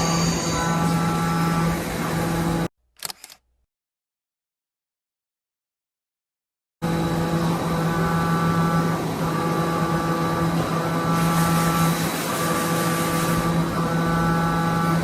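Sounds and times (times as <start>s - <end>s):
motor hum: 0.0s - 2.7s, 6.8s - 15.0s
whining servo tones: 0.0s - 2.7s.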